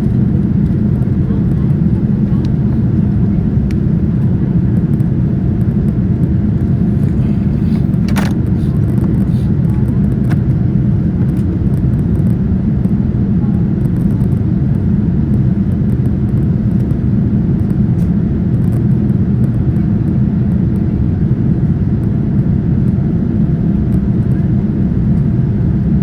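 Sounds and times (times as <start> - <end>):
jet engine cabin roar: 0.0 - 26.0.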